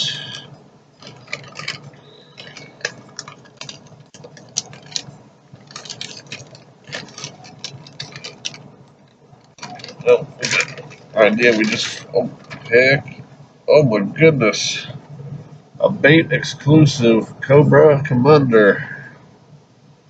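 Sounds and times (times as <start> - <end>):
wrapping paper crinkling: 1.0 - 13.2.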